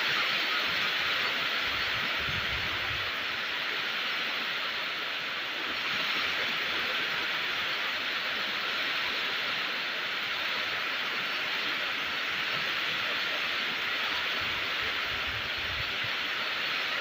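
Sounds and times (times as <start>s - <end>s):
steady rain falling: 0.0s - 17.0s.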